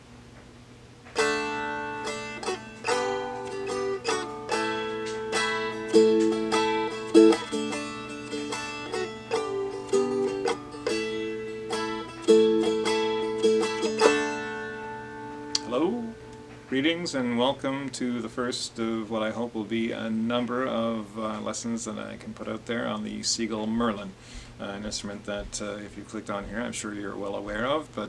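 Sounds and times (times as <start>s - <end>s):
strummed dulcimer tune: 1.2s - 16.9s.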